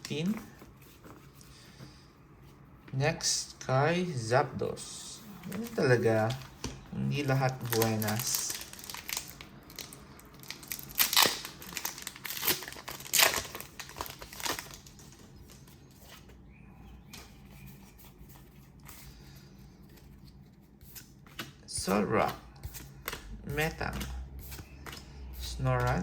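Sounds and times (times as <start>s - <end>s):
plastic packaging crinkling: 5.4s - 6.6s, 7.3s - 15.8s.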